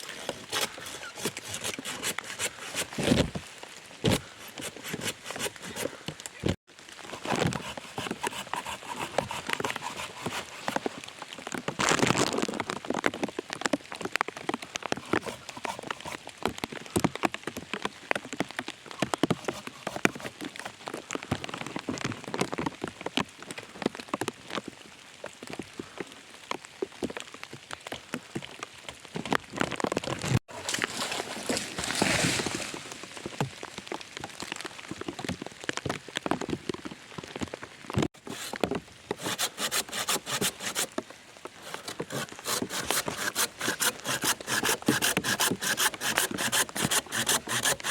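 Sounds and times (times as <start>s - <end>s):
rain pattering in forest: 6.1s - 7.1s, 11.0s - 15.1s, 16.2s - 19.3s, 20.7s - 38.1s.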